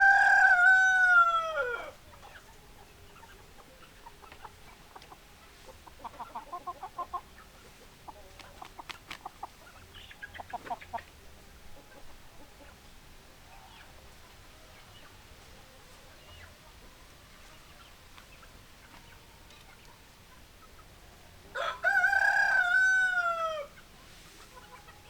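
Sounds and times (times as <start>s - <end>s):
rooster crowing: 0.0s - 2.0s, 21.5s - 23.8s
hens clucking: 0.0s - 25.0s.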